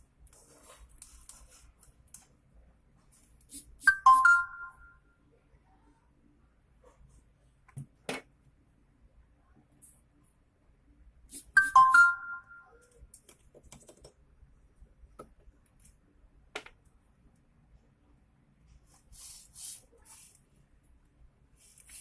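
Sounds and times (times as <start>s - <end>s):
two-note electronic chime: 3.9s - 5.0s, 11.6s - 12.7s.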